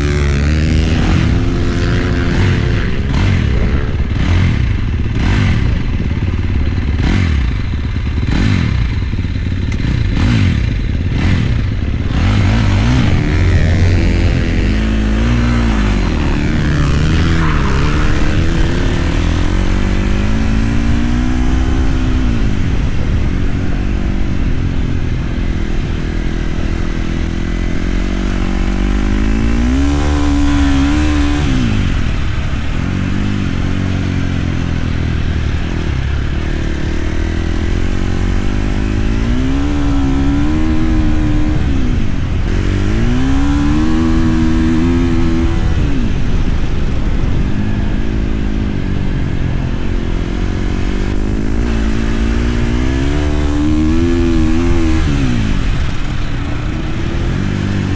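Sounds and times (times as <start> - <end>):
low rumble: 0.0 - 57.9
motorcycle engine revving: 0.0 - 57.9.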